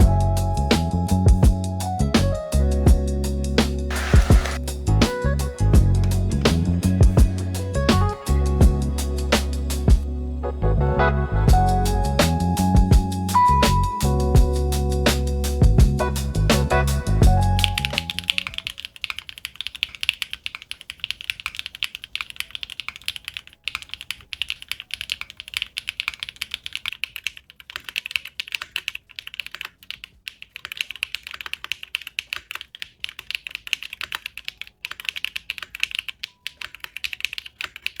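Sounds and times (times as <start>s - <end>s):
fast typing on mechanical keyboard: 3.9s - 4.6s, 17.6s - 38.0s.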